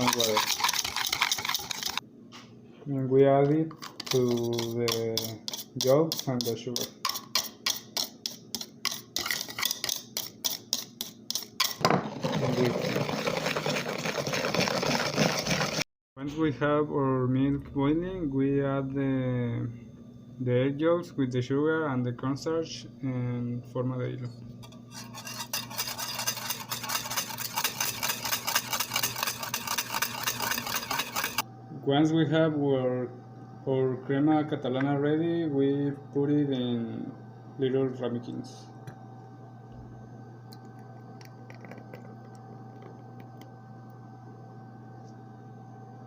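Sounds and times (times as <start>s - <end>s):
utensil scraping a saucepan: 0.0s - 2.0s, 3.7s - 15.8s, 24.6s - 31.4s
whisk beating in a bowl: 0.0s - 2.0s, 3.7s - 15.8s, 24.9s - 31.4s
low electrical hum: 0.0s - 15.6s, 16.2s - 46.0s.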